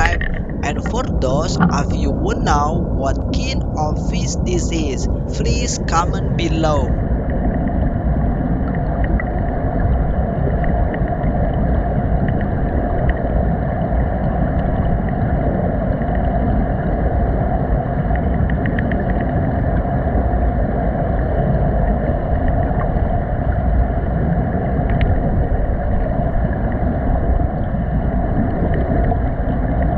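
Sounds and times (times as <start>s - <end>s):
underwater rumble and rushing: 7.0s - 29.9s.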